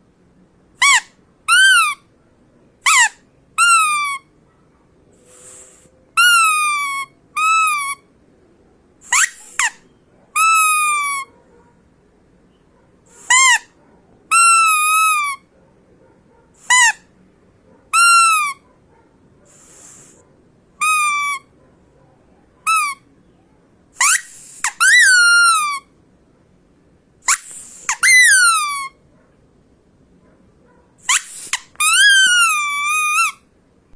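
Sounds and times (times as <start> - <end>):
rubber duck squeaks: 0.8 - 2.0, 2.8 - 4.3, 6.2 - 8.0, 9.0 - 11.3, 13.2 - 15.4, 16.6 - 17.1, 18.0 - 18.6, 20.8 - 21.5, 22.7 - 23.1, 24.0 - 25.9, 27.2 - 29.0, 31.0 - 33.4.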